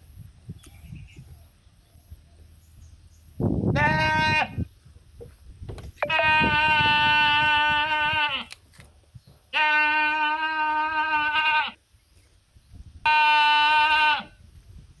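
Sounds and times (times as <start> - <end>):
sheep bleating: 3.8 - 4.6, 6.0 - 8.5, 9.5 - 11.8, 13.1 - 14.4.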